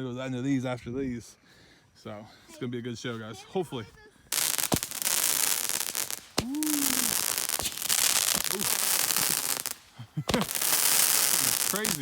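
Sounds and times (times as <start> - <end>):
fireworks hissing and crackling: 4.3 - 12.0.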